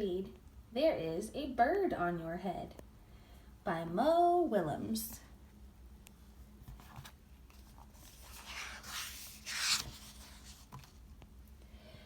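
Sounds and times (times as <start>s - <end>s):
book pages turning: 6.6s - 11.1s.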